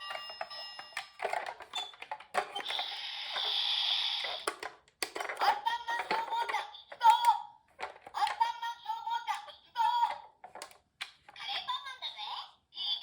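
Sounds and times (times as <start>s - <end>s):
plastic clicks: 4.2s - 8.4s, 10.1s - 11.4s.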